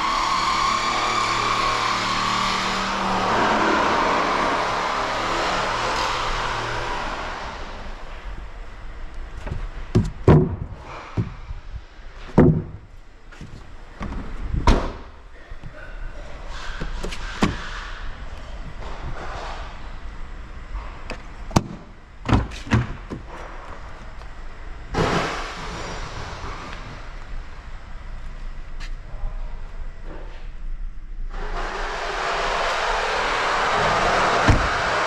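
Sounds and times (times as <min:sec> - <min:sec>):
loud slams and knocks: 0:09.4 - 0:11.6, 0:12.3 - 0:12.9, 0:14.0 - 0:15.1, 0:16.8 - 0:18.0, 0:21.5 - 0:23.3, 0:33.6 - 0:35.0.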